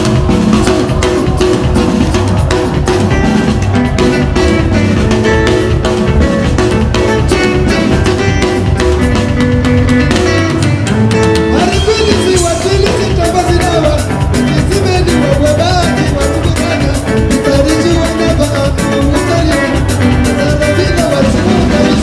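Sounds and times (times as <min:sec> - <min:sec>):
drum beat: 0:00.0 - 0:22.0
guitar: 0:00.0 - 0:22.0
live band music: 0:00.0 - 0:22.0
person singing: 0:06.9 - 0:08.8, 0:09.8 - 0:22.0.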